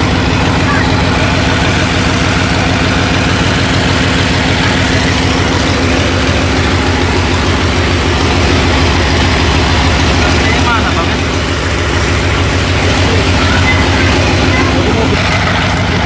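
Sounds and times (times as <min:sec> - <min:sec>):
bulldozer diesel engine idling: 0:00.0 - 0:16.0.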